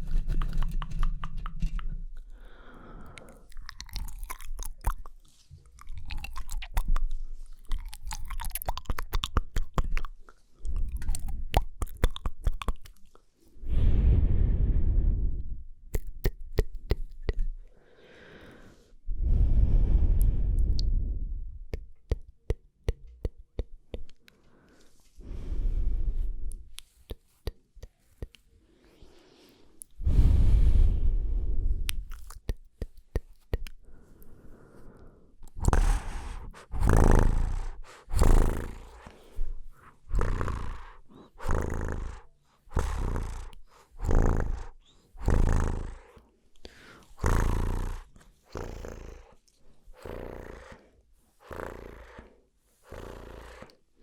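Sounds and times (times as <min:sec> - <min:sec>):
wet mouth clicks: 0:00.0 - 0:13.6, 0:15.8 - 0:17.8, 0:20.0 - 0:24.4, 0:26.1 - 0:28.6, 0:31.6 - 0:53.9
breathy mouth noises: 0:00.0 - 0:54.0
air rumble on microphone: 0:13.6 - 0:15.9, 0:19.1 - 0:21.8, 0:25.2 - 0:26.7, 0:30.0 - 0:32.2.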